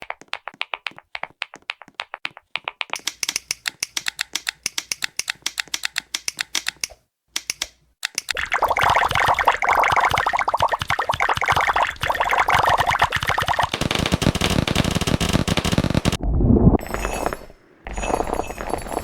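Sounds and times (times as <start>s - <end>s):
typing on a keyboard: 0.0s - 8.4s.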